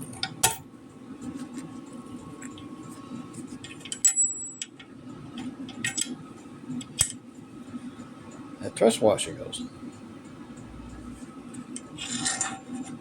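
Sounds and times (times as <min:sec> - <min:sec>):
steady low hum: 0:00.0 - 0:13.0
sharp ringing clink: 0:04.0 - 0:04.6.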